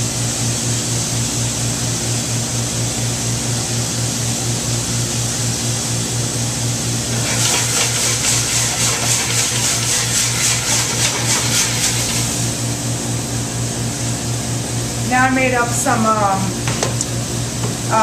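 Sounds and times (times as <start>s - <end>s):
low machine hum: 0.0s - 18.0s
meat sizzling in a pan: 5.4s - 12.7s
quick stirring strokes: 7.0s - 12.6s.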